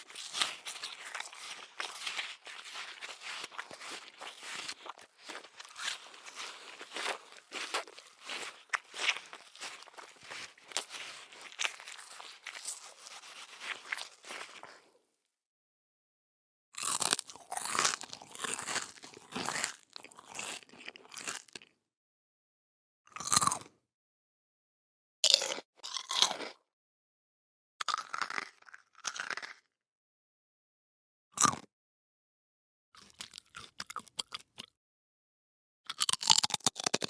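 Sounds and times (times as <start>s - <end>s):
person chewing crunchy food: 0.0s - 15.0s, 16.8s - 21.7s, 23.1s - 23.7s, 25.2s - 26.6s, 27.8s - 29.6s, 31.4s - 31.7s, 33.0s - 34.7s, 35.9s - 37.0s.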